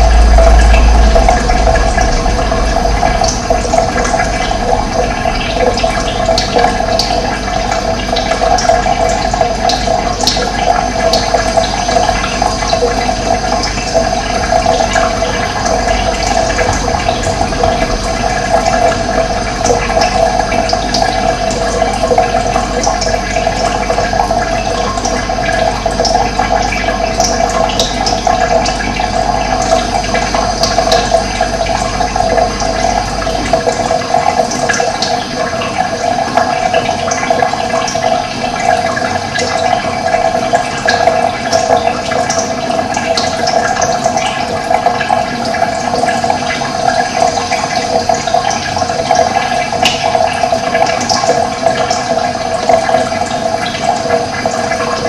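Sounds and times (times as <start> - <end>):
water rushing: 0.0 - 55.0.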